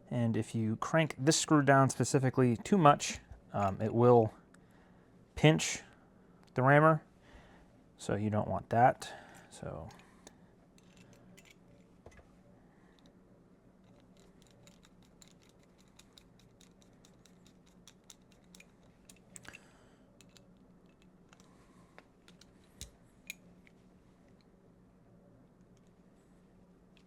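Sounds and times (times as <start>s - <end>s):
metallic clicks and scrapes: 10.2s - 11.9s, 13.8s - 19.6s, 20.2s - 21.6s, 22.2s - 23.8s.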